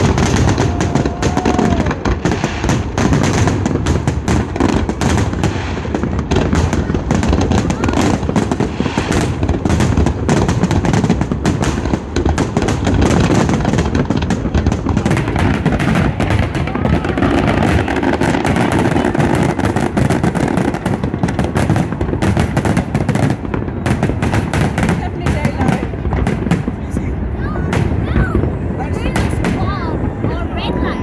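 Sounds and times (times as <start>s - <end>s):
deep fireworks booms: 0.0s - 31.0s
fireworks bangs and crackles: 0.0s - 31.0s.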